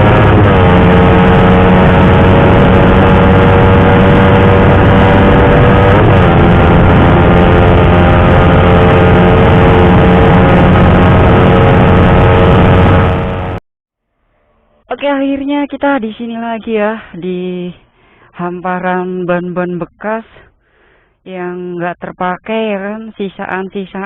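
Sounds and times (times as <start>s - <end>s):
loud motorcycle engine running: 0.0s - 13.6s.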